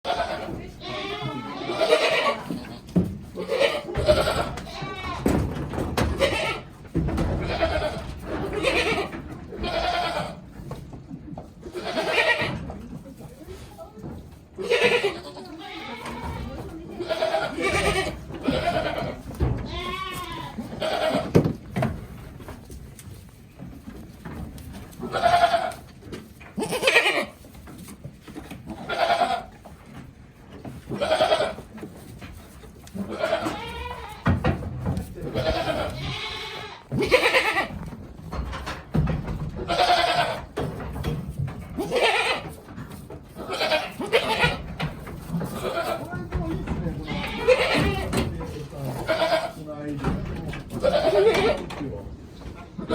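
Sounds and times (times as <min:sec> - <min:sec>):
goats bleating: 0:00.0 - 0:10.4, 0:11.6 - 0:12.6, 0:14.6 - 0:21.4, 0:25.0 - 0:25.9, 0:26.5 - 0:27.4, 0:28.7 - 0:29.7, 0:30.9 - 0:31.7, 0:32.9 - 0:34.4, 0:35.3 - 0:37.9, 0:39.6 - 0:40.6, 0:41.8 - 0:42.6, 0:43.3 - 0:49.6, 0:50.7 - 0:51.7.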